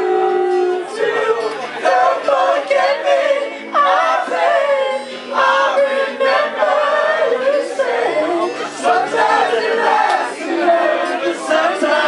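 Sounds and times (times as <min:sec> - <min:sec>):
voices singing wordlessly: 0:00.0 - 0:12.0.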